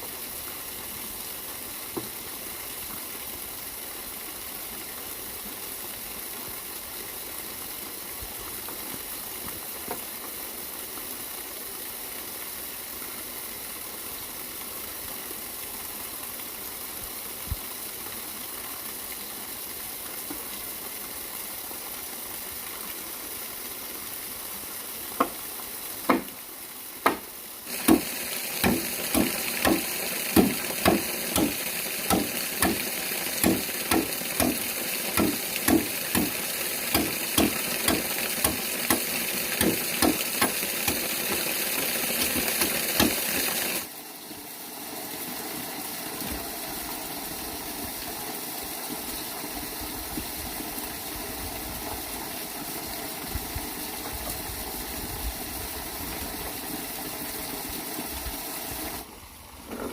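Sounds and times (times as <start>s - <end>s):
water running and splashing: 0.0s - 59.2s
sharp repeated strikes: 27.0s - 41.1s.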